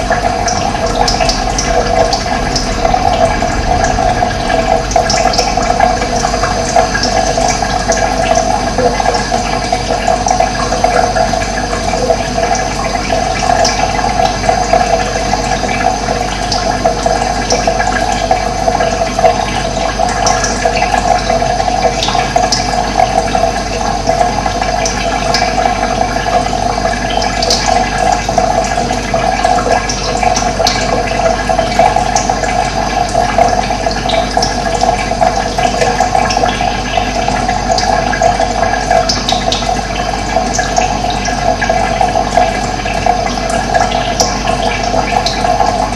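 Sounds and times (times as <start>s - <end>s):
running water: 0.0s - 45.9s.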